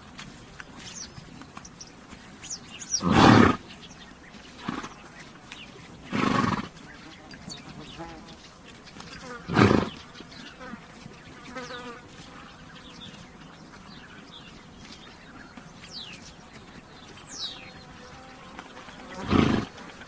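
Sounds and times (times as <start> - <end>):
small birds chirping: 0.0 - 20.0
horse snorting: 2.9 - 3.7, 4.5 - 5.1, 6.0 - 6.9, 9.3 - 10.0, 19.2 - 20.0
flies buzzing: 4.4 - 20.0.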